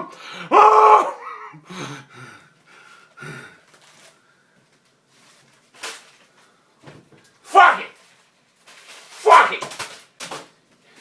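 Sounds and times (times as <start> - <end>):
man gasping and panting: 0.0 - 3.7
man wailing: 0.5 - 1.7.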